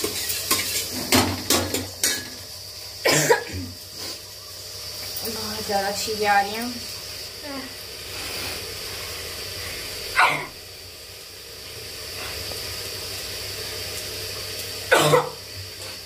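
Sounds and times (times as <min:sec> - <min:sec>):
person sneezing: 0:14.9 - 0:15.4.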